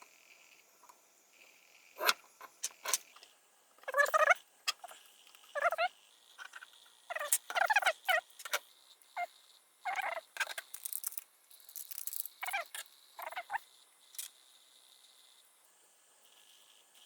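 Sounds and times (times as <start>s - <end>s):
chirping animal calls: 3.8s - 6.0s, 9.2s - 10.3s, 12.4s - 13.6s.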